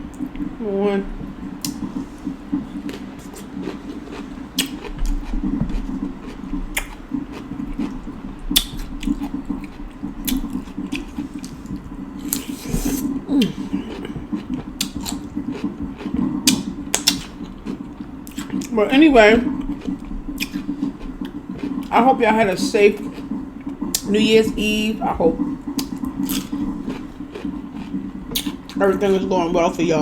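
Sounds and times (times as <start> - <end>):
chewing and wet mouth smacks: 1.6 - 18.8, 19.4 - 21.9, 22.6 - 24.1, 25.4 - 29.0.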